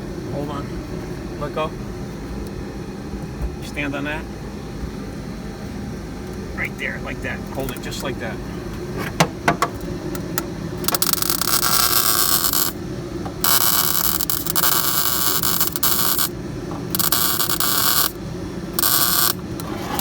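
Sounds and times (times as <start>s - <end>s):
welder arc crackling: 9.8s - 18.2s, 18.8s - 20.0s.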